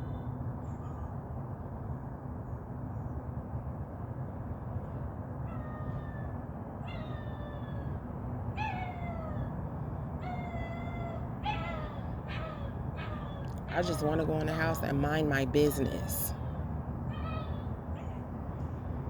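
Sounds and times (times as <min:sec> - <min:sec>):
low background rumble: 0:00.0 - 0:19.0
puppy whining yelps: 0:05.4 - 0:13.5, 0:17.1 - 0:18.3.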